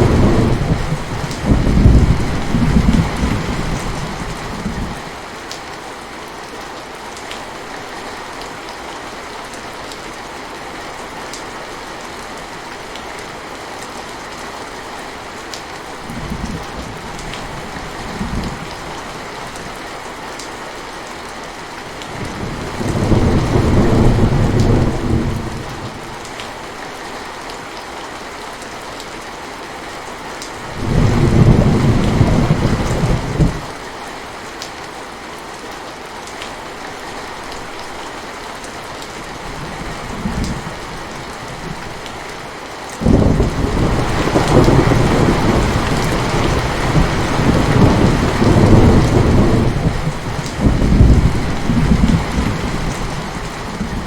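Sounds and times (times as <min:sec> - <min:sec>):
thunder rumbling: 0:00.0 - 0:05.0, 0:22.2 - 0:26.0, 0:30.7 - 0:33.7, 0:43.0 - 0:54.0
steady rain falling: 0:00.0 - 0:54.0.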